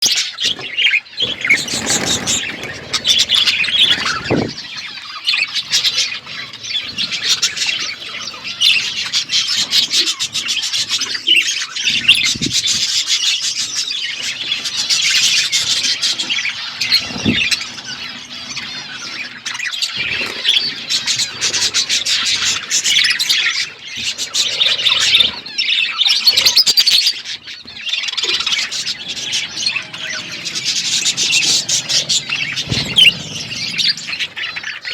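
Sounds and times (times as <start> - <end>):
parrots chirping and chattering: 0.0 - 34.9.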